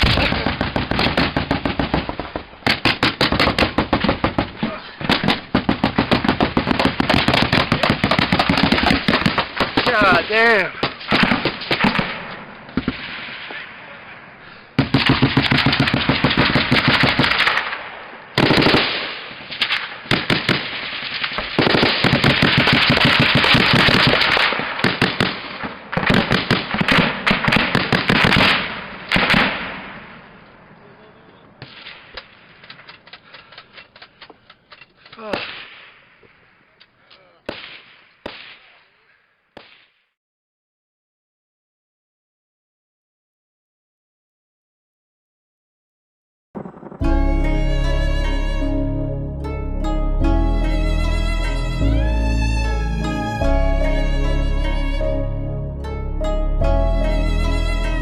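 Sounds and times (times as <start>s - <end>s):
automatic gunfire: 0.0s - 4.5s, 5.1s - 10.2s, 14.8s - 19.1s, 21.5s - 29.7s.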